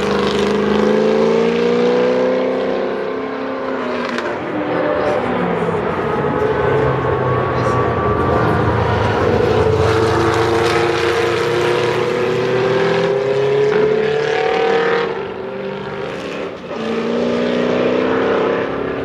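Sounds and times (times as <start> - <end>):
race car engine accelerating: 0.0 - 19.0
second car engine: 0.0 - 19.0.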